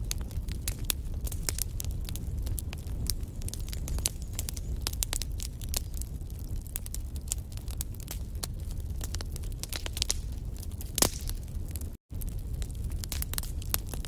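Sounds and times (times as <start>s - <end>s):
wood fire crackling and popping: 0.0s - 14.0s.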